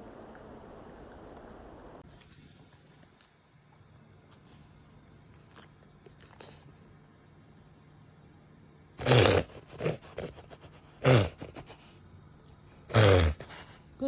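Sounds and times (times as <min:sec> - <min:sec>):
dog reverse sneezing: 0:09.0 - 0:11.8.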